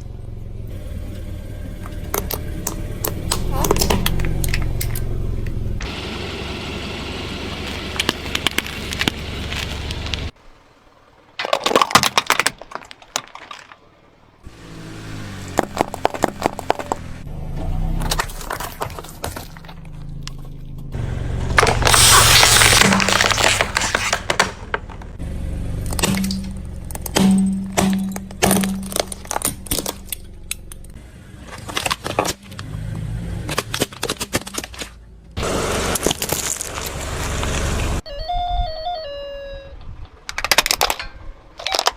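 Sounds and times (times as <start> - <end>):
car engine running: 0.0 - 11.4, 12.7 - 33.8, 35.0 - 38.0
toys cracking under car tyre: 1.8 - 5.6, 7.6 - 10.4, 11.4 - 14.1, 15.4 - 17.2, 17.8 - 25.2, 25.8 - 32.7, 33.4 - 35.0, 35.8 - 38.0, 40.2 - 41.9.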